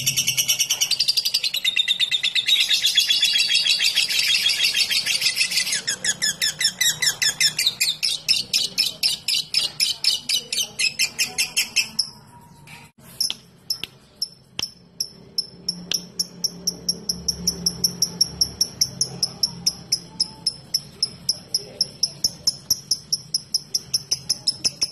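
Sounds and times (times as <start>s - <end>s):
bird chirping rapidly: 0.0s - 24.9s
very high ticking chirps: 13.2s - 24.9s.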